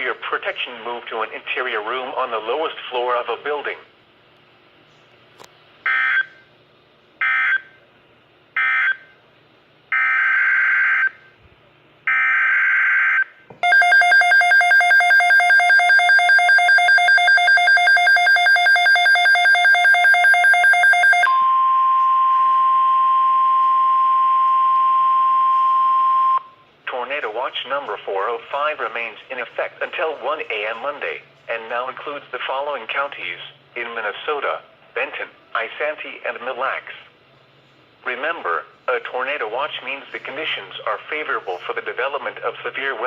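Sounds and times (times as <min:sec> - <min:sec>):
pulsing electronic alarm: 0:09.9 - 0:11.2, 0:12.1 - 0:26.6.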